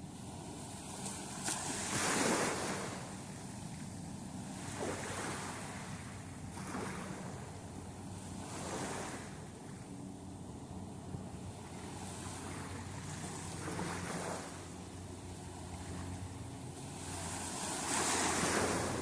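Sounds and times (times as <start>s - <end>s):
waves washing up a beach: 0.0s - 19.0s.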